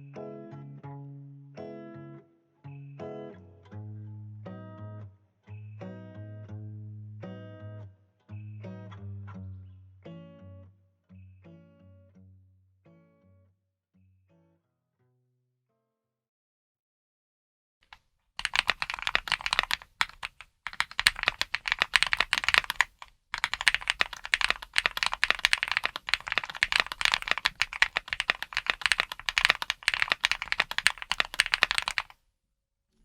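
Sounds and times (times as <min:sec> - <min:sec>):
fast mechanical keyboard typing: 0:18.4 - 0:32.2.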